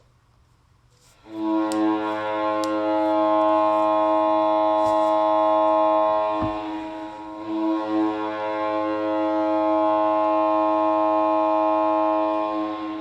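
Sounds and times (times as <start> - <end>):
goal horn blast: 1.2 - 12.9.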